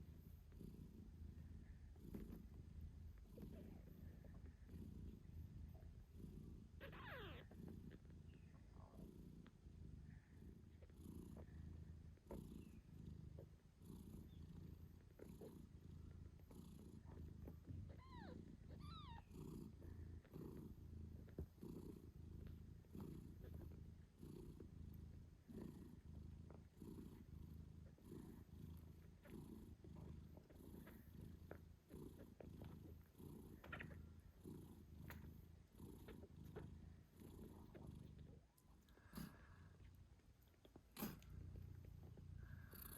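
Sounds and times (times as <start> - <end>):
cat purring: 0.0 - 42.9
kittens squeaking: 6.8 - 7.6, 17.8 - 19.3.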